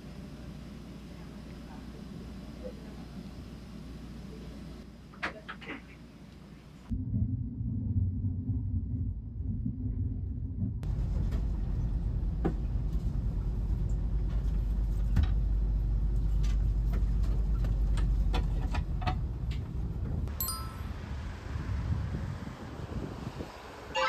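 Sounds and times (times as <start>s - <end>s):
vehicle rumble from inside: 6.9s - 23.9s.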